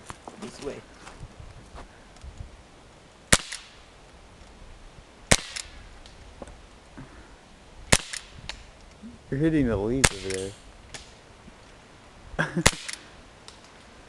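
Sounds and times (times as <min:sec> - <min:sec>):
pellet gun shots: 0:03.3 - 0:03.8, 0:05.3 - 0:05.7, 0:07.9 - 0:08.4, 0:10.0 - 0:11.1, 0:12.6 - 0:13.0.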